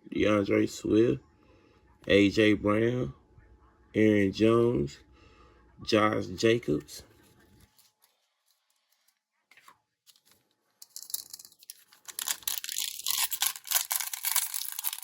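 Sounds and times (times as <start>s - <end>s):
foil wrapper tearing and crinkling: 10.2s - 15.0s.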